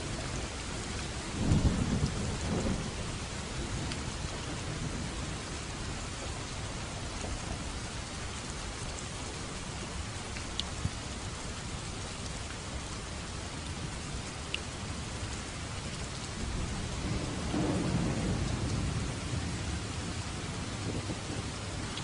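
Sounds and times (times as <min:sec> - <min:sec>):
rain falling: 0:00.0 - 0:22.0
thunder rumble: 0:00.2 - 0:07.6, 0:15.8 - 0:22.0.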